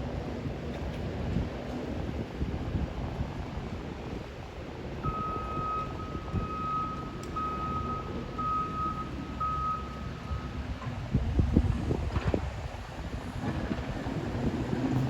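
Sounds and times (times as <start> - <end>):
backup alarm beeping: 5.0 - 10.6.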